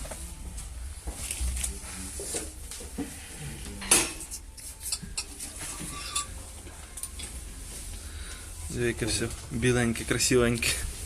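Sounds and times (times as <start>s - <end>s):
metal tools clinking and clanking: 3.8s - 7.3s.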